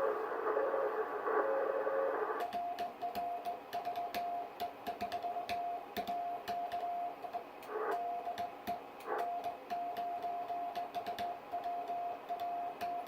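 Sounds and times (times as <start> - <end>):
radio receiver hiss: 0.0 - 2.5.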